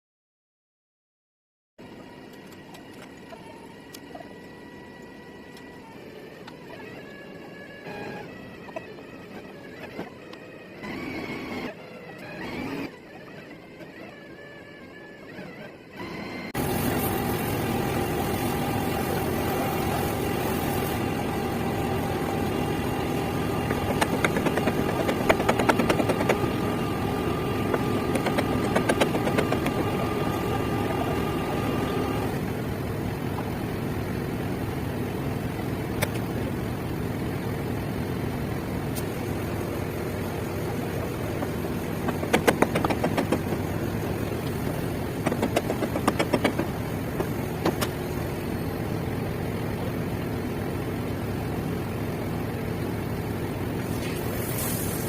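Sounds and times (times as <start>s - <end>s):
engine running steadily: 1.8s - 55.0s
high-pitched whine: 1.8s - 55.0s
rapid knocking clatter: 22.1s - 32.2s, 40.8s - 48.0s.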